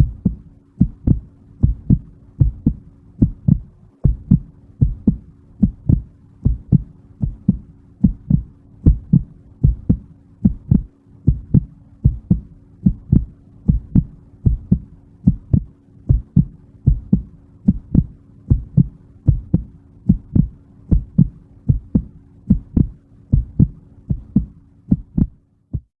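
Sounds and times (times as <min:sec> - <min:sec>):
faint steady hum: 0:00.0 - 0:25.9
heartbeat thumps: 0:00.0 - 0:26.0.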